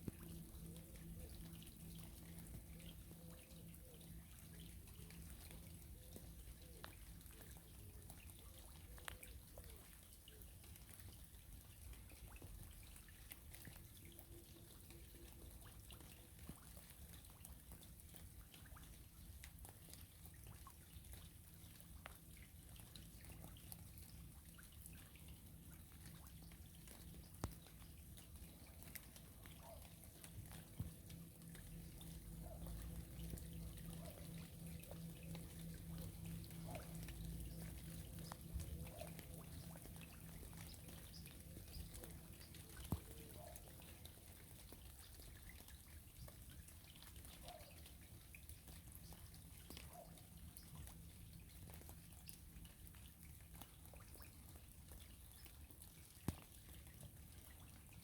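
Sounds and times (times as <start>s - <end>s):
low steady rumble: 0.0s - 10.4s, 17.9s - 47.0s
raindrops ticking and dripping: 0.0s - 58.0s.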